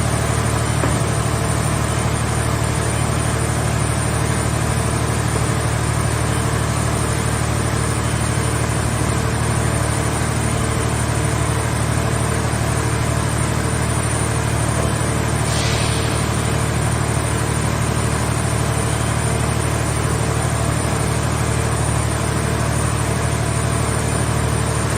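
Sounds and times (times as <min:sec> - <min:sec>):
baler engine running: 0:00.0 - 0:24.9
short hiss: 0:15.4 - 0:16.8.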